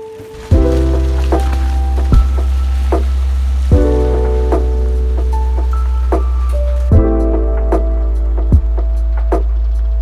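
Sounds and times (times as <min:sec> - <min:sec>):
deep steady bass: 0:00.5 - 0:10.0
drum hit: 0:03.7 - 0:09.5.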